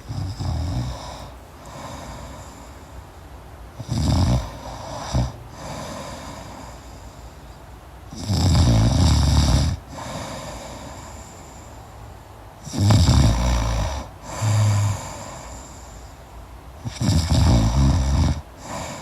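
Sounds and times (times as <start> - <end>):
person snoring: 0.0 - 2.8, 3.8 - 7.0, 8.2 - 11.3, 12.6 - 16.0, 16.8 - 19.0
quiet breathing: 0.0 - 8.5, 9.2 - 19.0.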